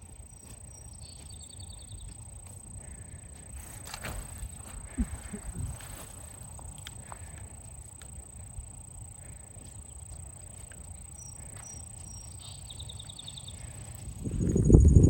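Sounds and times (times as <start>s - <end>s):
high bird or insect chirps: 0.0s - 15.0s
faint ticks: 6.5s - 8.2s, 9.2s - 12.3s.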